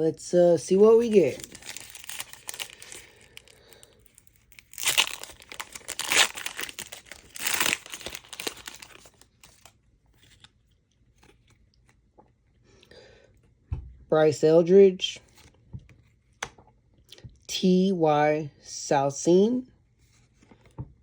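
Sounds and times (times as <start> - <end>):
card wrapper crinkling and ripping: 0.8 - 11.7
cards rustling and clicking: 0.9 - 12.0.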